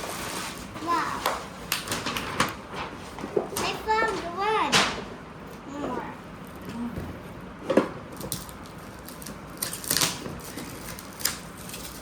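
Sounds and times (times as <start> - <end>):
packaging crinkling: 8.1 - 12.0.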